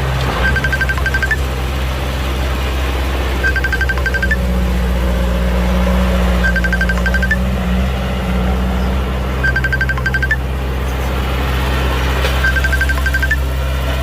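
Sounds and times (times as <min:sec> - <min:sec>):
high beeping alarm tune: 0:00.4 - 0:01.4, 0:03.4 - 0:04.4, 0:06.4 - 0:07.4, 0:09.4 - 0:10.4, 0:12.4 - 0:13.4.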